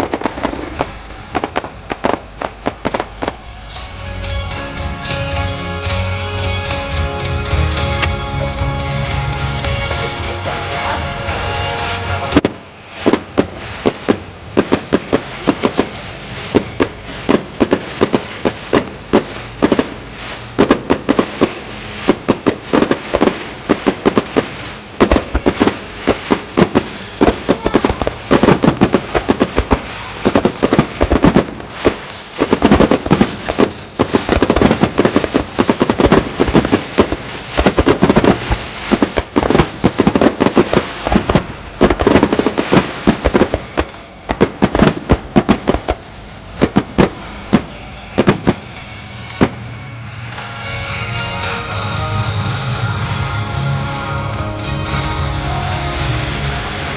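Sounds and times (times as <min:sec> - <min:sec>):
fireworks banging: 0:00.0 - 0:06.8, 0:09.5 - 0:50.7.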